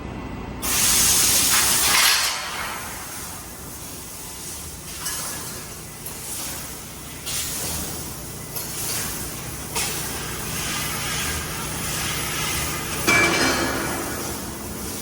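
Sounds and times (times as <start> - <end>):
gas hissing at cutting head: 0.6 - 15.0
machine hum: 2.4 - 15.0.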